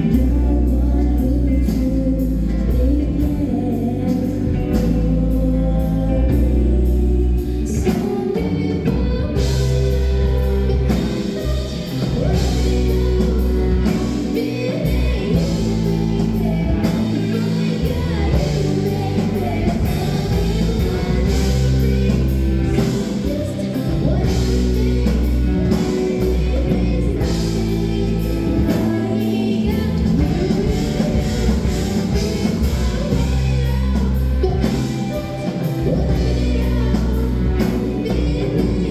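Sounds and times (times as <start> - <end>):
gospel song with band: 0.0 - 38.9.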